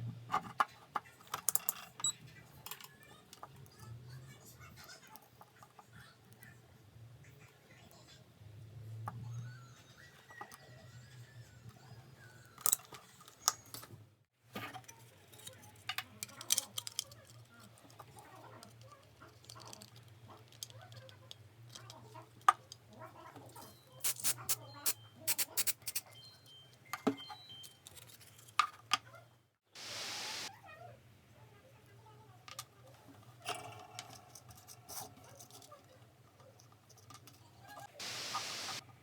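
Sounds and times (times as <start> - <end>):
steady hiss: 29.8 - 30.5, 38.0 - 38.8.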